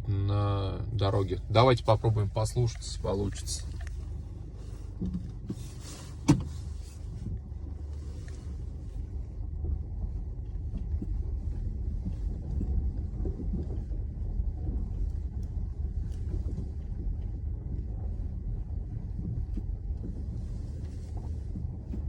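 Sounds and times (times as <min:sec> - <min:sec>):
car rumble from inside: 0:00.0 - 0:22.0
suspension knocks: 0:04.9 - 0:07.9.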